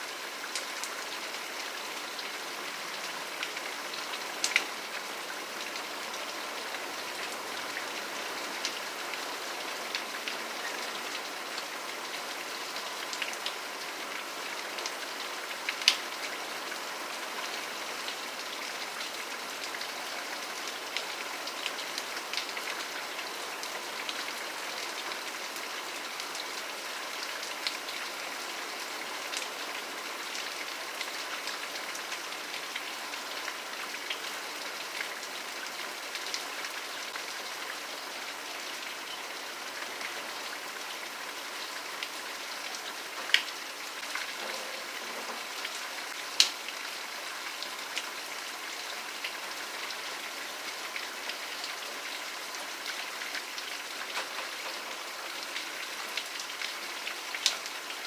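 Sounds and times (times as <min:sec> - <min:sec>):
steady rain falling: 0:00.0 - 0:58.0
raindrop ticks: 0:46.4 - 0:46.6.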